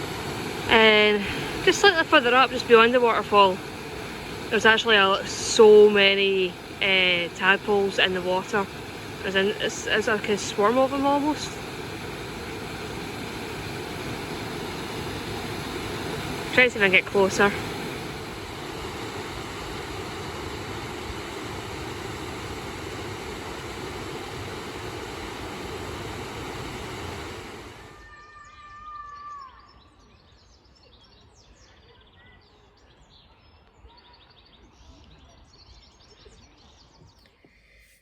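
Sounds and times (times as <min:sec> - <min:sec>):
waterfall rushing: 0:00.0 - 0:28.0
small birds chirping: 0:28.4 - 0:37.8.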